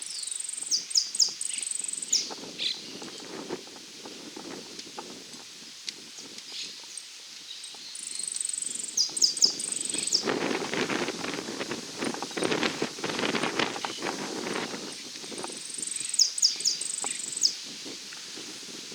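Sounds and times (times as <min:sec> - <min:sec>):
high chirping call: 0:07.6 - 0:10.3, 0:15.6 - 0:17.6
rustling through dry grass: 0:09.5 - 0:16.1.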